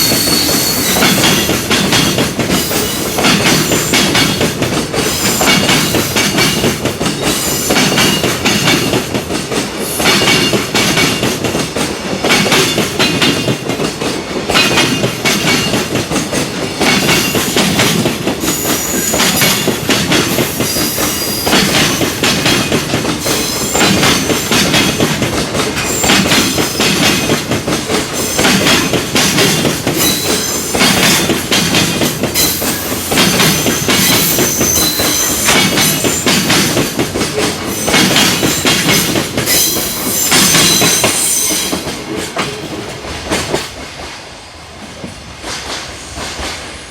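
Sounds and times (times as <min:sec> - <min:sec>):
high wheel squeal: 0:00.0 - 0:01.2, 0:34.0 - 0:36.4
train wheels clattering over joints: 0:00.0 - 0:44.2.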